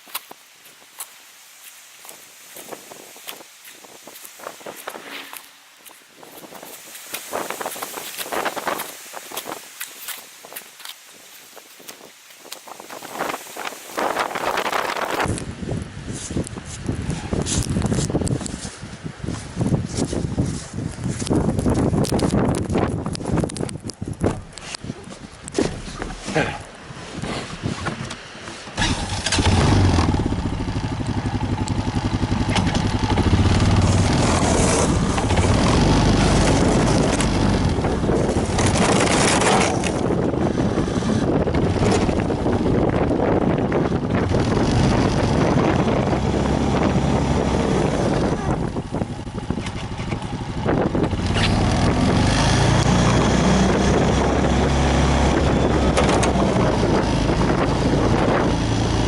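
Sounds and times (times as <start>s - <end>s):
engine running: 28.8s - 59.0s.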